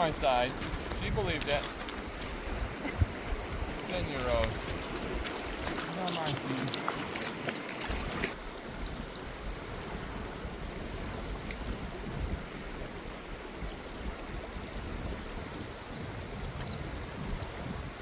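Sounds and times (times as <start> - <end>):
fast river rushing: 0.0 - 8.5
wind buffeting microphone: 0.0 - 18.0.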